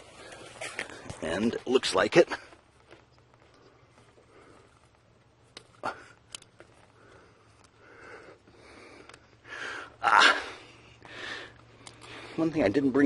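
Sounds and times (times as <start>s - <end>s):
soft breathing: 2.3s - 12.5s
sharp clicks and handling noises: 4.8s - 7.8s.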